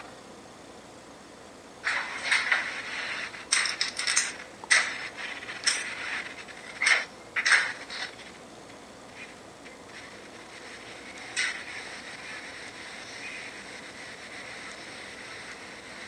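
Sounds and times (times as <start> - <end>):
hiss: 9.1 - 16.0.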